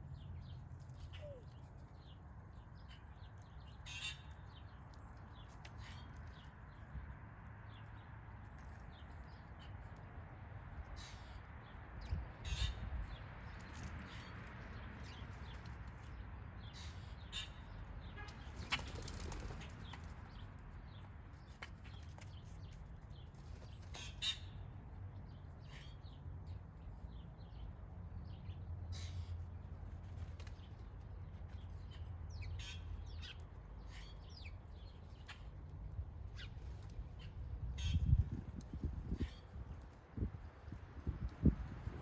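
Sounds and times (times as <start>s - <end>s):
bird wings flapping: 18.2s - 20.3s.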